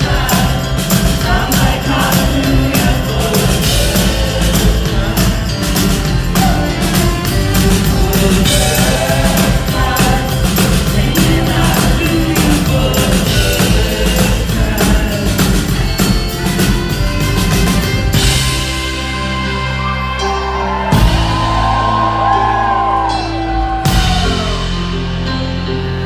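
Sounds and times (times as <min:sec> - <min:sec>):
person singing: 0:00.0 - 0:16.3
drum kit: 0:00.0 - 0:26.0
live rock band playing: 0:00.0 - 0:26.0.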